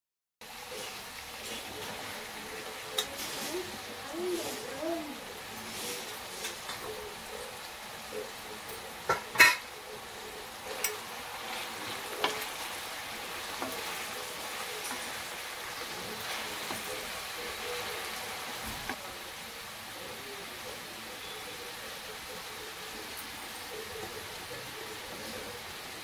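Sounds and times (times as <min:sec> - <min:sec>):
food sizzling in a pan: 0:00.4 - 0:26.0
spoon knocking against pan: 0:09.1 - 0:09.7.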